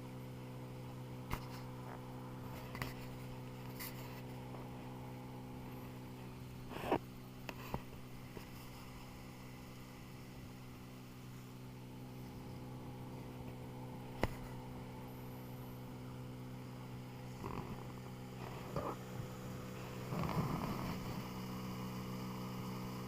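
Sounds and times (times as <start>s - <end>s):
outboard motor humming: 0.0s - 23.0s.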